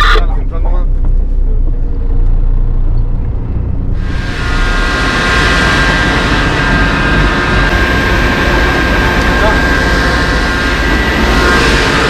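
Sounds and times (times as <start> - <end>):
low engine rumble: 0.0 - 12.0
loud hiss with high whine: 4.0 - 12.0.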